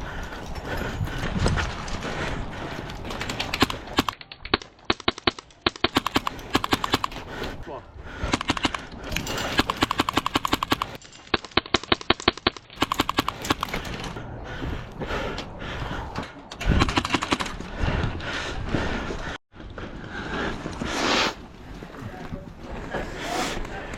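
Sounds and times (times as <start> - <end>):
airsoft gun full-auto bursts: 4.9 - 7.2, 9.6 - 11.0, 11.8 - 13.8.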